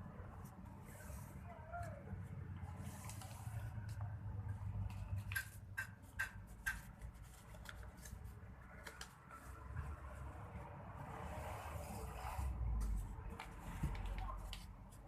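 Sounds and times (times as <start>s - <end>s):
paper folding crackles: 6.6s - 9.5s.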